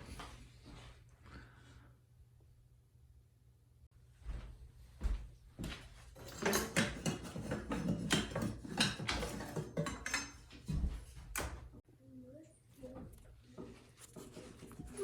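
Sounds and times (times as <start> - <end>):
metal tools clinking and clattering: 6.2 - 10.9.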